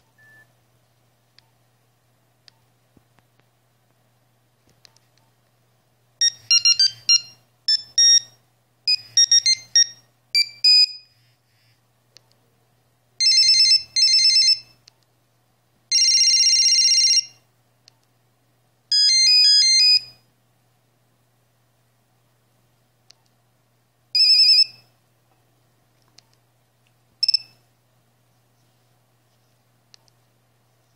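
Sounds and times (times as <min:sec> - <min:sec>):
mobile phone ringtones: 0:06.2 - 0:08.3, 0:08.9 - 0:11.1, 0:13.2 - 0:14.7, 0:15.9 - 0:17.4, 0:18.9 - 0:20.1.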